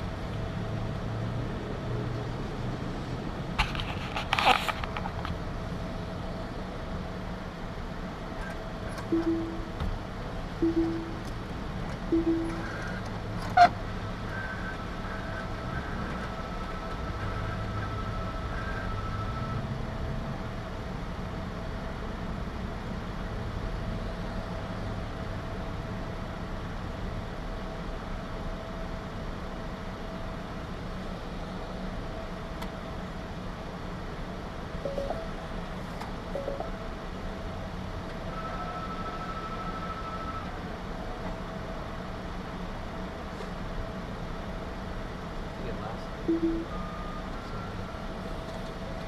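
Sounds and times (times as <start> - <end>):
vehicle rumbling: 0.0 - 49.0
thin steady tone: 9.1 - 9.9, 10.6 - 11.5, 12.1 - 13.0, 34.9 - 35.4, 46.3 - 47.0
higher steady tone: 9.1 - 13.0, 34.9 - 35.4, 36.4 - 36.8, 46.3 - 46.9.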